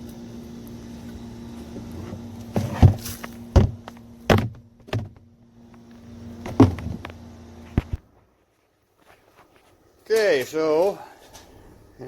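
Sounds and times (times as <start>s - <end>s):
steady low hum: 0.0s - 10.1s
knocks and clunks of handling: 2.5s - 5.3s, 6.4s - 7.1s.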